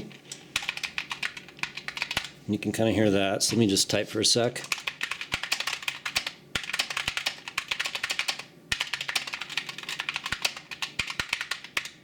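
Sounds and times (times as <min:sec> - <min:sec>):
fast typing on mechanical keyboard: 0:00.5 - 0:02.3, 0:04.6 - 0:12.0.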